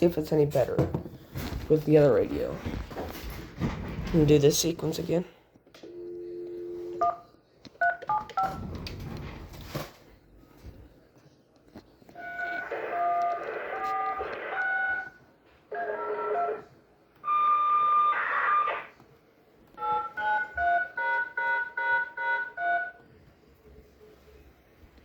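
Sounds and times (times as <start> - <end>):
touch-tone dialing beeps: 19.8 - 23.0.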